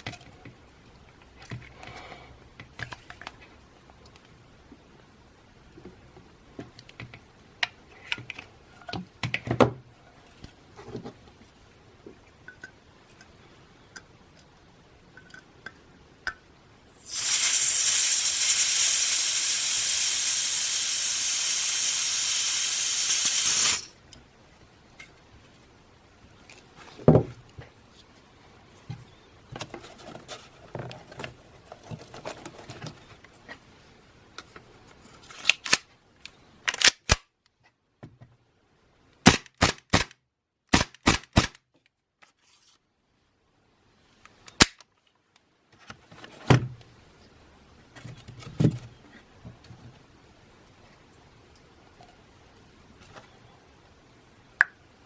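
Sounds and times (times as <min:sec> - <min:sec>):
gas hissing through valve: 0:17.0 - 0:24.0.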